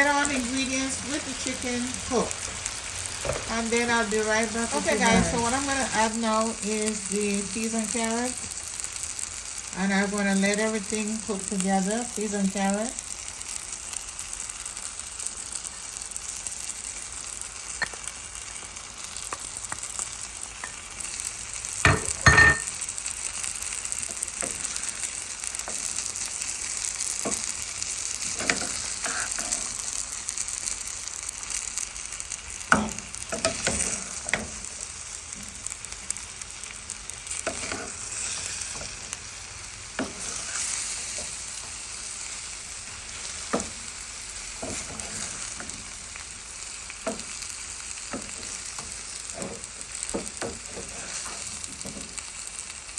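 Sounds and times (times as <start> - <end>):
food sizzling in a skillet: 0.0 - 52.9
utensil scraping a pan: 37.4 - 38.9, 40.0 - 41.3, 48.2 - 52.0.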